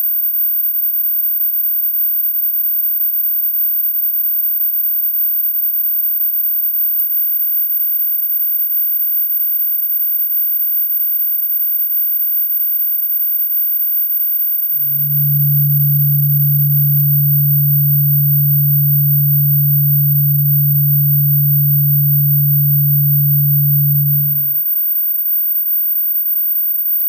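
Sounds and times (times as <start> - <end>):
loud steady low hum: 14.8 - 24.6.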